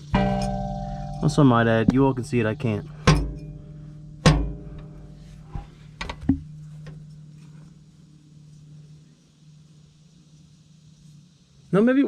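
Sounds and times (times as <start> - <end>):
steady low hum: 0.0 - 12.0
hammer knocks on metal: 3.1 - 3.4, 4.2 - 4.9.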